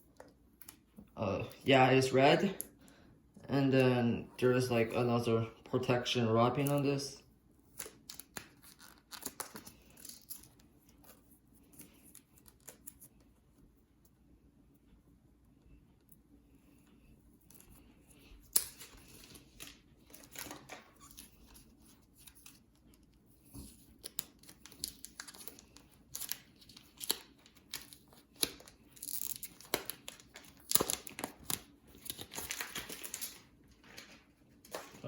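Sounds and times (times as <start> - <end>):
plastic wrapping tearing and crinkling: 7.8 - 10.6, 24.0 - 35.0.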